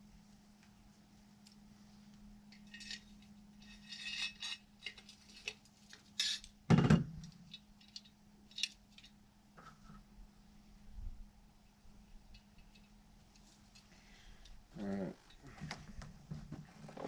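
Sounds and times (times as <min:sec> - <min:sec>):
light metallic clinks and scrapes: 0:02.5 - 0:06.5.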